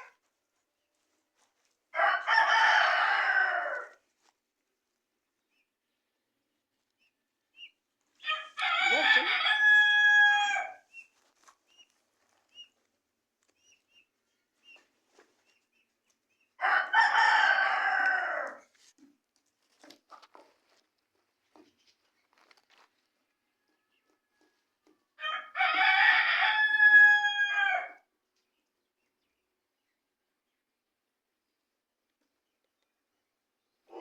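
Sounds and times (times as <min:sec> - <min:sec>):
rooster crowing: 0:02.0 - 0:04.0, 0:08.3 - 0:10.8, 0:16.6 - 0:18.6, 0:25.2 - 0:28.0.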